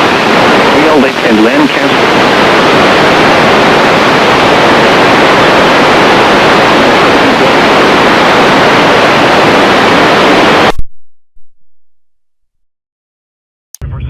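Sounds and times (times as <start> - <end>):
radio static hiss: 0.0 - 10.8.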